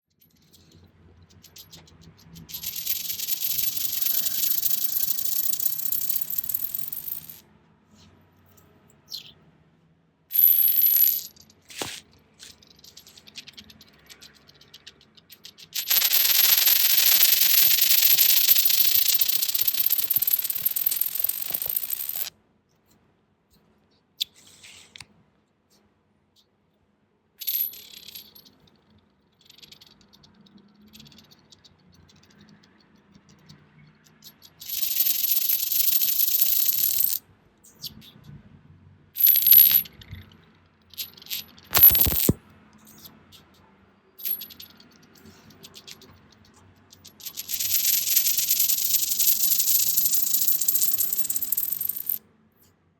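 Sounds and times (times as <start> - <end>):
coins rattling: 1.3 - 7.4, 10.3 - 22.3, 27.4 - 28.5, 29.4 - 30.0, 31.0 - 31.3, 34.2 - 37.2, 39.2 - 40.2, 40.9 - 43.0, 44.2 - 46.2, 46.9 - 52.2
coins clinking: 1.5 - 7.4, 10.3 - 22.3, 27.4 - 28.5, 34.3 - 37.2, 39.2 - 40.2, 41.0 - 43.0, 44.2 - 46.2, 46.9 - 52.2.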